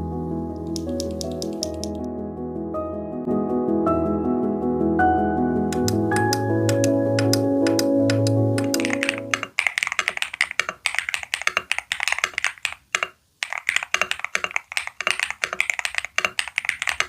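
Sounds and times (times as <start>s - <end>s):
background music: 0.0s - 9.5s
keyboard key clacks: 0.6s - 2.0s, 5.7s - 17.0s.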